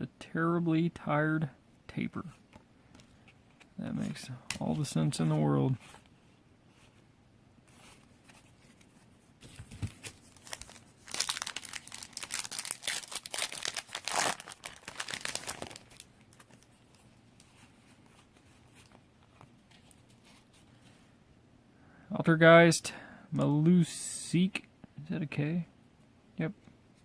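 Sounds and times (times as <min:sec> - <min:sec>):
foil wrapper crinkling and tearing: 0:09.9 - 0:17.0.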